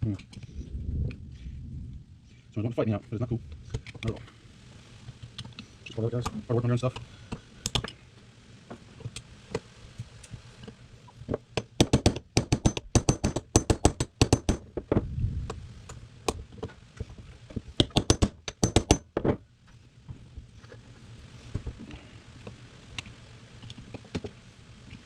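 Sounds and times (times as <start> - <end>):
hand tools tapping on metal parts: 7.6 - 8.0, 11.6 - 14.9, 17.8 - 19.4.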